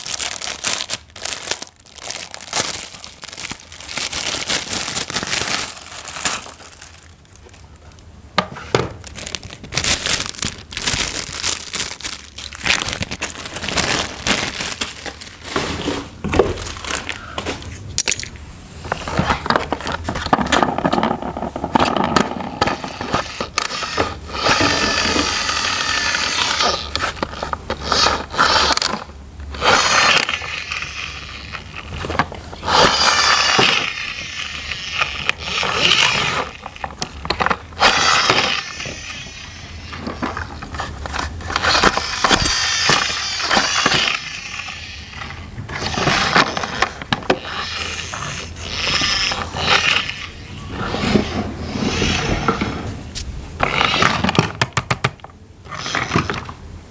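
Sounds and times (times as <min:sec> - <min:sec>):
wrapping tearing and crinkling: 0:00.0 - 0:08.1, 0:08.9 - 0:52.3
plastic scraping and clicking: 0:12.6 - 0:25.4, 0:50.8 - 0:56.6.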